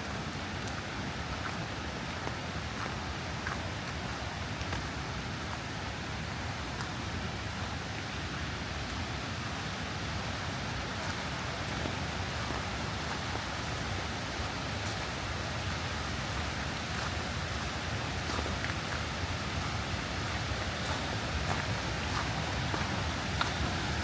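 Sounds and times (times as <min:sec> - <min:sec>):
running water rushing: 0:00.0 - 0:24.0
steady rain: 0:00.0 - 0:24.0.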